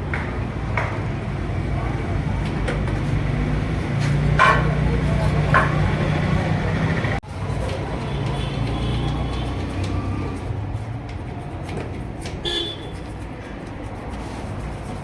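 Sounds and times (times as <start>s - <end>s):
traffic noise: 0.0s - 15.0s
vehicle engine running: 2.0s - 11.1s.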